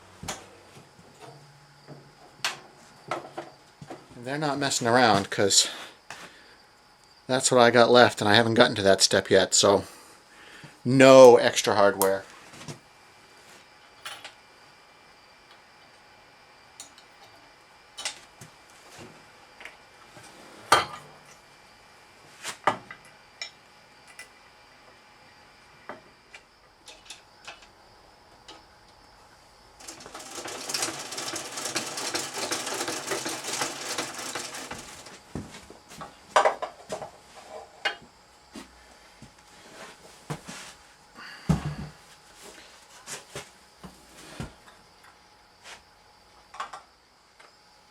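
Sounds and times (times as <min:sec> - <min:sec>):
dense metallic rattle: 0:29.8 - 0:35.1.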